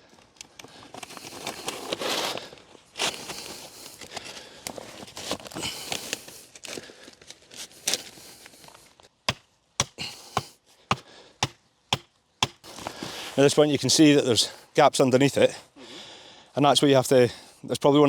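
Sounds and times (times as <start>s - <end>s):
sharp chopping strikes: 9.3s - 12.7s.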